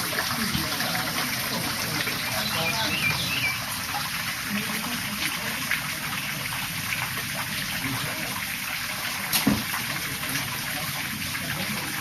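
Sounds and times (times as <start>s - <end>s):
fountain water splashing: 0.0s - 12.0s
brief knock: 9.3s - 9.7s.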